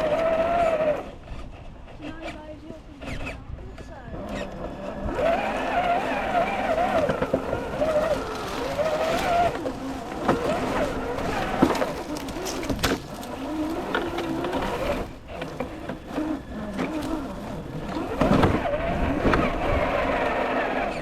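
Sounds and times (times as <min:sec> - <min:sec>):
electric motor and gearbox whining: 0:00.0 - 0:21.0
tyres knocking on rocks: 0:05.2 - 0:18.7.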